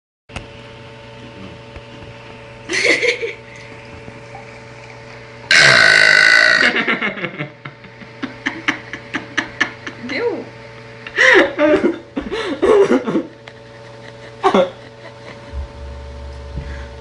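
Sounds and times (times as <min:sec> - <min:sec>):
person burping: 0:05.5 - 0:06.9.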